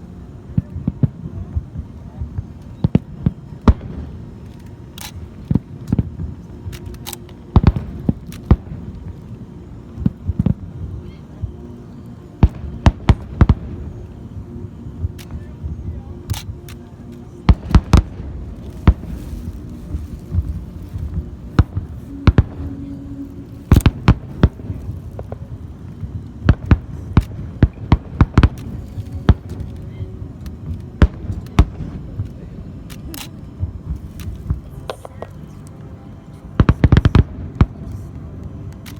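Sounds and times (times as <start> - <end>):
low rumble: 17.4 - 35.6.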